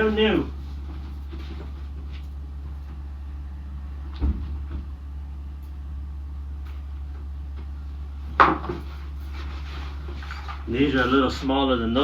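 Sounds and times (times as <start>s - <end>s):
steady low hum: 0.0s - 12.0s
tire knocks: 4.0s - 5.0s, 8.2s - 9.1s.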